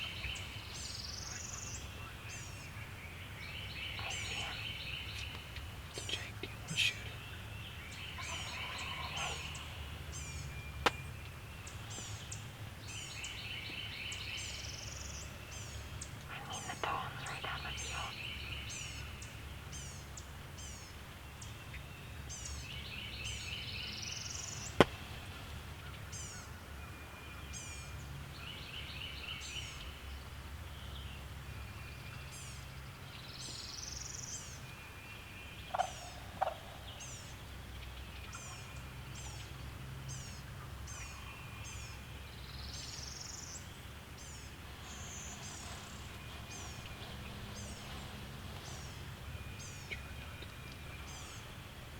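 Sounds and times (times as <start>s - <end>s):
birds singing song phrases: 0.0s - 51.9s
short bird calls: 3.9s - 10.1s.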